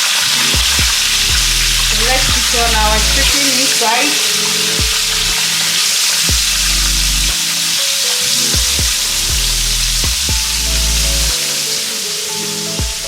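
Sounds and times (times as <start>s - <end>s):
background music with bass beat: 0.0s - 3.6s, 4.2s - 13.0s
deep-frying sizzle: 0.0s - 13.0s.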